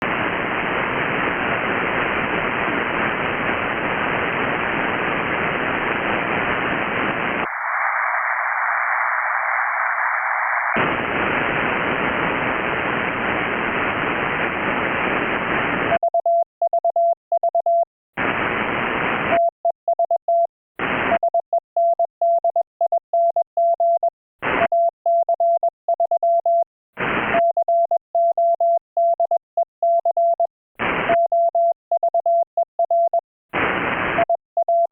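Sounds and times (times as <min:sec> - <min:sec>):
radio band hiss: 0:00.0 - 0:16.0, 0:18.2 - 0:19.4, 0:20.8 - 0:21.1, 0:27.0 - 0:27.4, 0:30.8 - 0:31.2, 0:33.6 - 0:34.2.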